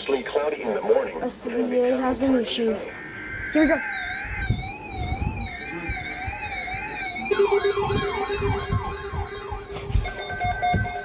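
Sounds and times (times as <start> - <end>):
warbling siren tone: 2.9 - 10.9
sweeping siren wail: 3.0 - 10.8.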